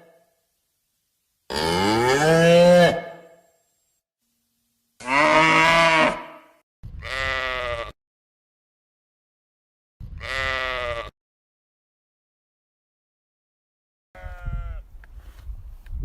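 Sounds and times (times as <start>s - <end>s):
short bleats: 5.0s - 8.0s, 10.1s - 11.2s, 14.2s - 14.9s.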